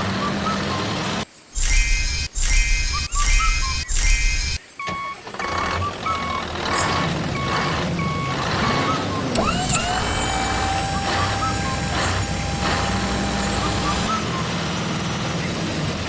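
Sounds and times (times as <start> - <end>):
gliding chirps: 1.6 - 4.6
steady high tone: 1.6 - 4.6
reversing alarm beeping: 1.6 - 14.4.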